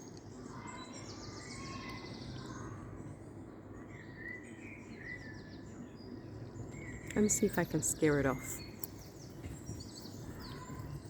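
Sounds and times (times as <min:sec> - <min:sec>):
low background noise: 0:00.0 - 0:11.0
bird chirps: 0:03.8 - 0:11.0.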